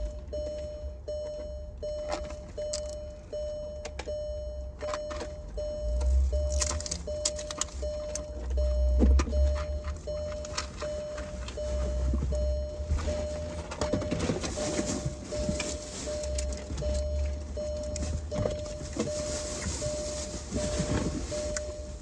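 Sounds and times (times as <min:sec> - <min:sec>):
car warning chime: 0:00.0 - 0:22.0
items clattering in car: 0:00.0 - 0:22.0.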